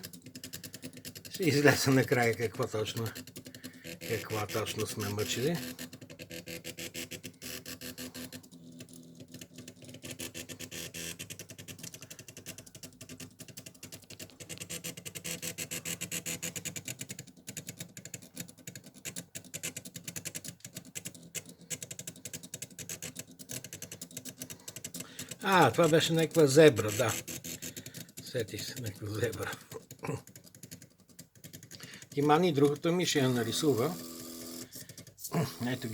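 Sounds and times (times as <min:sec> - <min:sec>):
stepper motors ticking and buzzing: 0:00.0 - 0:35.9
pen scratching paper: 0:24.6 - 0:30.8.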